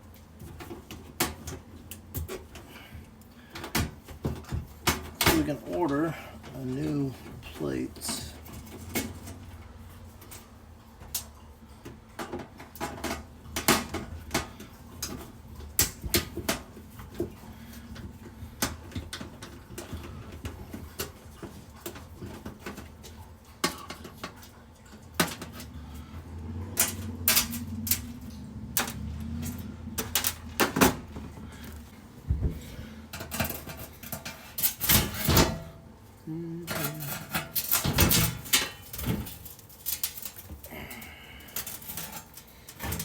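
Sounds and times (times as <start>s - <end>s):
metal parts and tools clanking: 33.1s - 35.8s, 36.6s - 43.0s.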